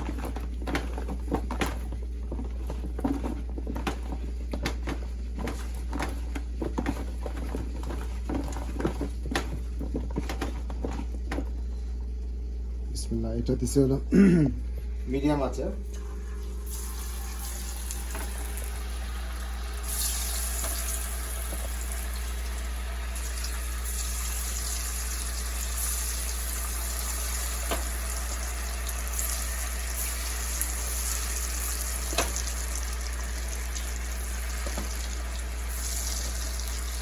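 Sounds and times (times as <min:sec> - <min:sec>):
chicken sizzling in hot oil: 0:16.4 - 0:37.0
oil popping: 0:16.6 - 0:37.0.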